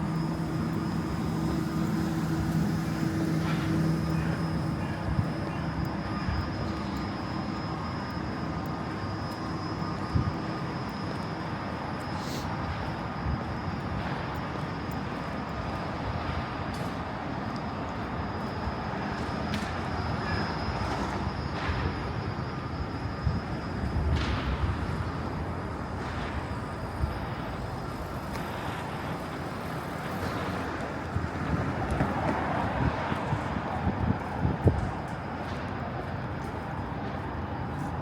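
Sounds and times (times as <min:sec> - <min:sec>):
low hum: 0:00.0 - 0:14.9
thin high whine: 0:00.0 - 0:38.0
train rumbling: 0:00.0 - 0:38.0.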